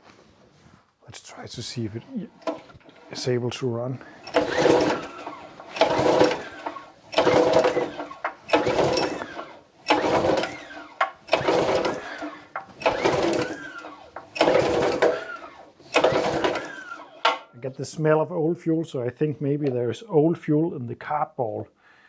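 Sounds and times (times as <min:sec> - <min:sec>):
recoil starter cranking whirr: 0:02.1 - 0:03.4, 0:04.0 - 0:17.5.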